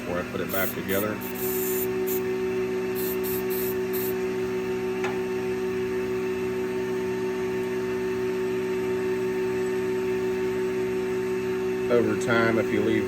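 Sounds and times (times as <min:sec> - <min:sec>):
shop machinery humming: 0:00.0 - 0:13.0
aerosol spray hisses: 0:00.5 - 0:02.3, 0:03.0 - 0:04.2.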